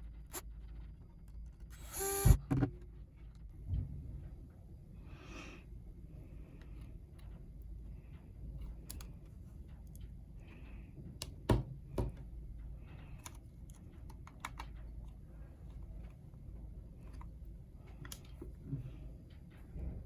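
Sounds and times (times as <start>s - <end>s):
small plastic and metal clicks: 13.0s - 15.8s.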